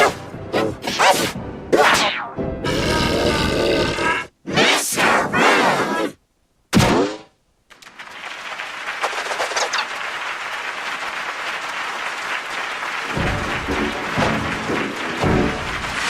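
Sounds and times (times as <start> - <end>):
music: 0.0 - 3.6, 13.0 - 16.0
audience applauding: 7.7 - 16.0.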